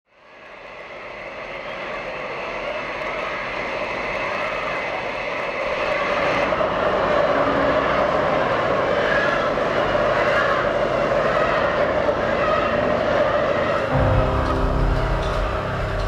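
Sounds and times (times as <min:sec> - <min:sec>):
steady mechanical drone: 0:13.6 - 0:16.0
low hum: 0:13.9 - 0:16.0.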